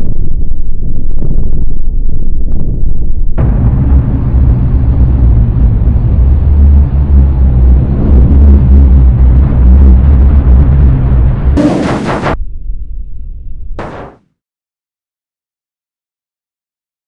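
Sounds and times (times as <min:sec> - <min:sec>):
loud deep rumble: 0:00.0 - 0:14.2
bright burst of noise: 0:11.6 - 0:12.4, 0:13.8 - 0:14.2.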